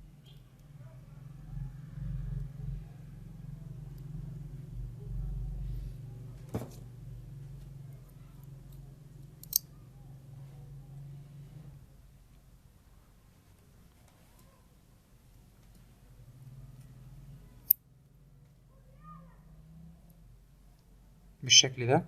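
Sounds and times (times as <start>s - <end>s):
steady low hum: 0.0s - 13.4s.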